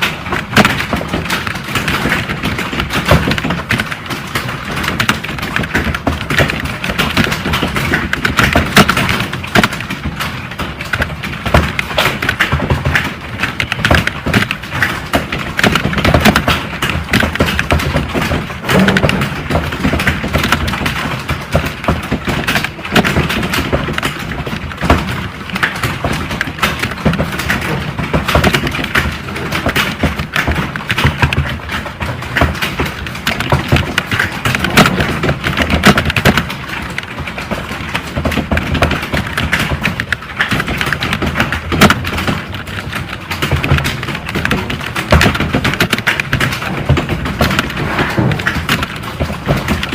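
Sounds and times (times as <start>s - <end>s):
fast typing on keyboard: 0.0s - 49.9s.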